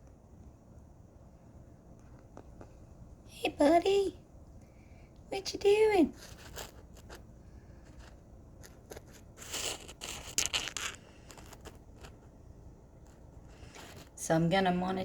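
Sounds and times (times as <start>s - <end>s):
scraping and rustling: 6.1s - 12.4s, 13.0s - 14.2s.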